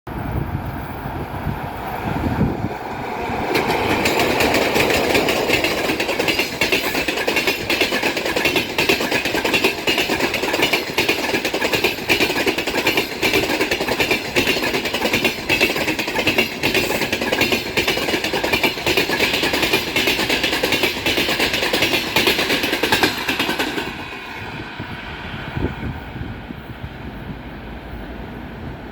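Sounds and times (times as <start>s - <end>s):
train wheels clattering over rail joints: 2.5s - 24.6s.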